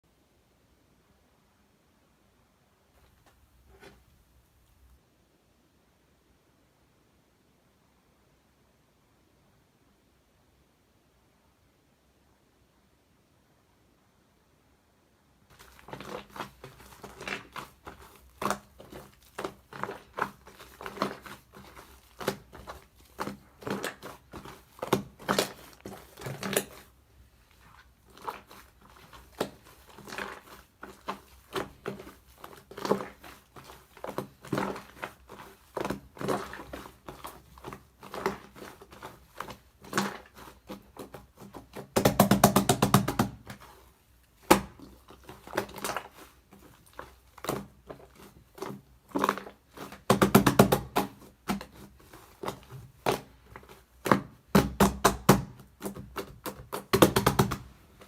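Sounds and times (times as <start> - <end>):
slime squished by hand: 15.5 - 58.0.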